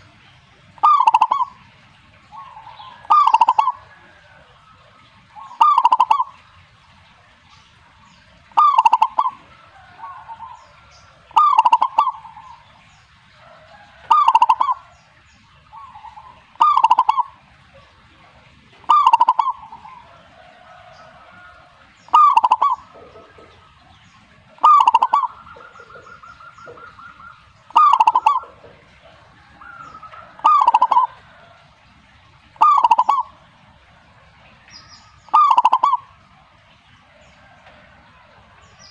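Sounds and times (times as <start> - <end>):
faint dove calling: 0.7 - 6.5, 8.4 - 12.8, 13.5 - 14.9, 15.7 - 18.1, 18.8 - 23.8, 24.4 - 33.4, 35.1 - 36.3
dove cooing loudly: 0.7 - 6.7, 8.4 - 14.9, 15.6 - 34.4, 35.2 - 36.4.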